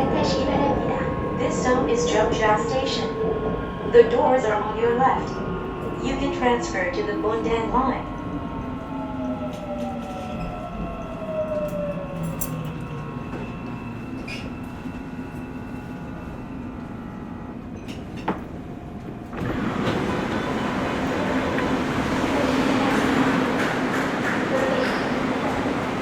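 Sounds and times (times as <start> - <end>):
sliding doors opening: 19.3 - 26.0.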